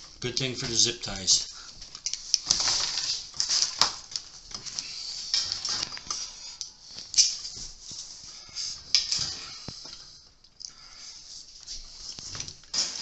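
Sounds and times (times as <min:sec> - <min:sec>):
metal parts rustling and clicking: 0:02.0 - 0:06.3.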